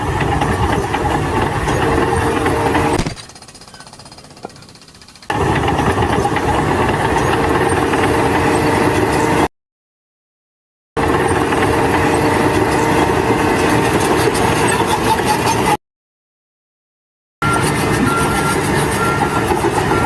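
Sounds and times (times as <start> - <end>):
construction machinery hammering: 0.0 - 9.5, 17.4 - 20.0.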